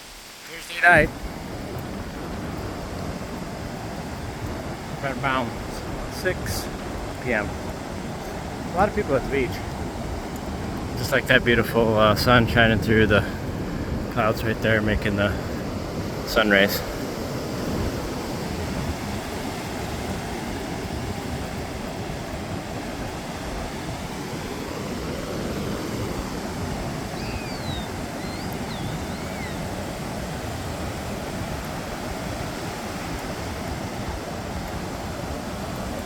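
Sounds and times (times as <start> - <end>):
ocean surf breaking: 0.0 - 36.0
wind rumbling on microphone: 0.8 - 36.0
faint high gliding calls: 27.0 - 30.0.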